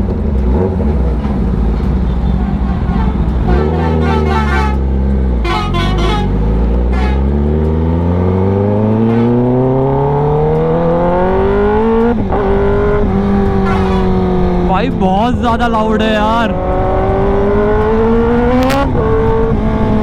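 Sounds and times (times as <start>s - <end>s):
motorcycle engine revving: 0.0s - 15.0s, 16.0s - 20.0s.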